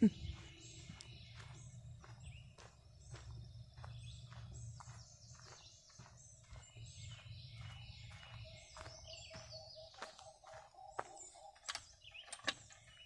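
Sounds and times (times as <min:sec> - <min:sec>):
footsteps walking: 0:00.0 - 0:11.7
birds chirping and singing: 0:00.0 - 0:13.0.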